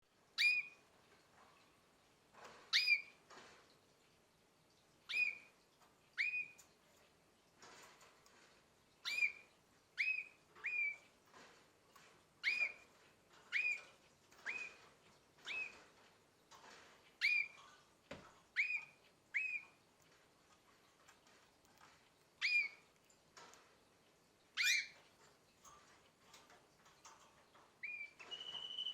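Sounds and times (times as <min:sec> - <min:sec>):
canary whistled call notes: 0:00.4 - 0:00.8, 0:10.0 - 0:11.0, 0:18.6 - 0:19.7, 0:27.8 - 0:28.9.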